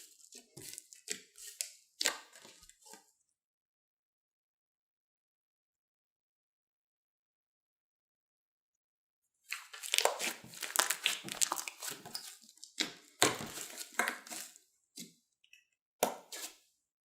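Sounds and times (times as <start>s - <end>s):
slime crackling and popping: 9.5s - 14.6s.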